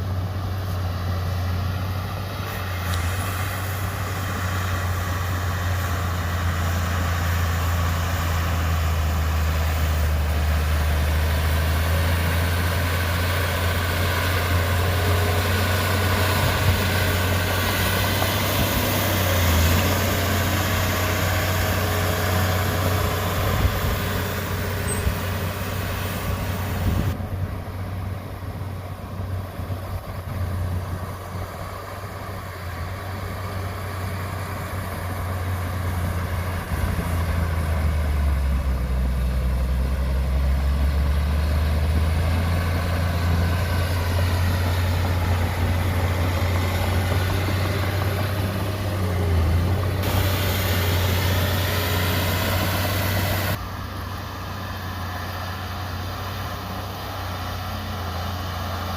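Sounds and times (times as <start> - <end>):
heavy diesel engine humming: 0.0 - 58.9.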